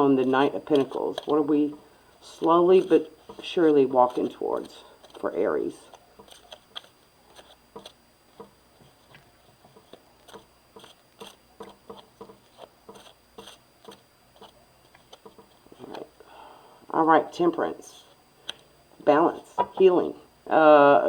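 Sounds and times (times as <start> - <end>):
cards clicking while shuffled: 0.2 - 16.1.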